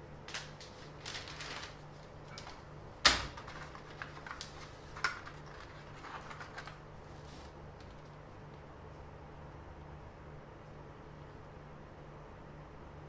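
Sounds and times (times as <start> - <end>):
objects being moved clicking: 3.4 - 6.8.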